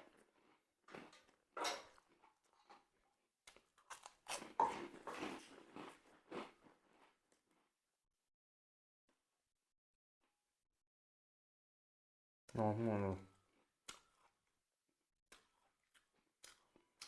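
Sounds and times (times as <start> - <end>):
crunchy chewing: 3.4 - 7.2, 15.3 - 17.0.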